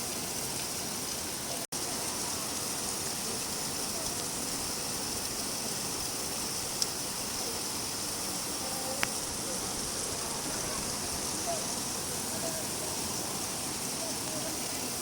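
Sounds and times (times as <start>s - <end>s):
steady rain falling: 0.0s - 15.0s
sharp drip-like tick: 5.1s - 7.1s, 9.0s - 9.2s.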